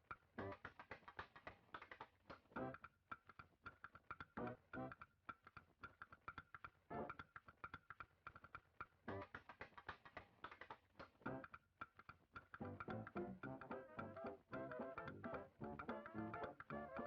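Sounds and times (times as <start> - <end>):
plucked guitar-like music: 12.6 - 17.0.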